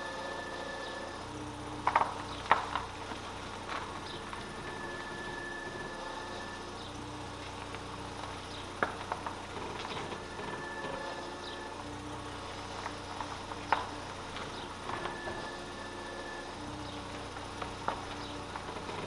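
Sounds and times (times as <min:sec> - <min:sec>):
car engine idling: 0:00.0 - 0:19.0
engine whine: 0:00.0 - 0:19.0.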